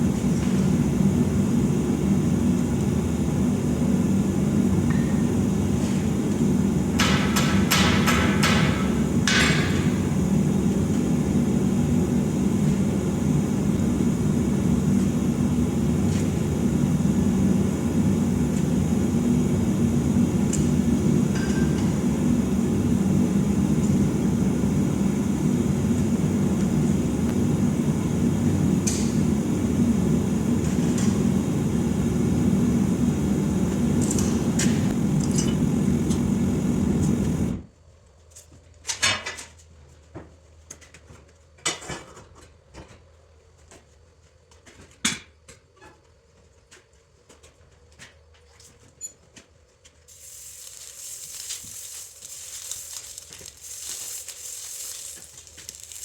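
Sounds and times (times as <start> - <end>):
gas forge burner rushing: 0.0 - 37.7, 50.1 - 56.0.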